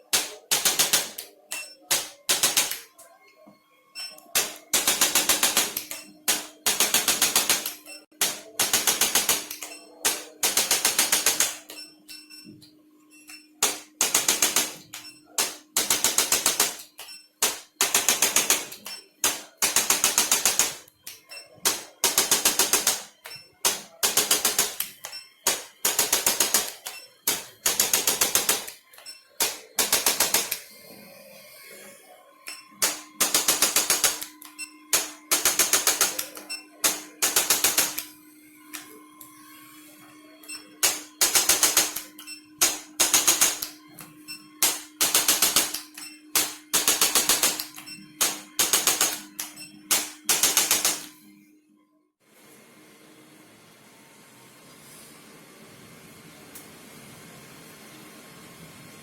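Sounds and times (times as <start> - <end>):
rapid mechanical clicking: 0.0 - 2.8, 4.4 - 11.8, 13.6 - 30.6, 32.5 - 38.1, 40.8 - 43.8, 44.6 - 51.1.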